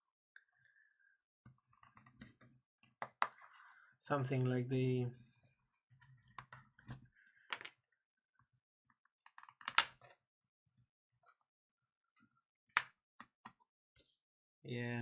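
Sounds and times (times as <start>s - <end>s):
plastic clicks and snaps: 9.3s - 10.1s, 12.7s - 13.3s.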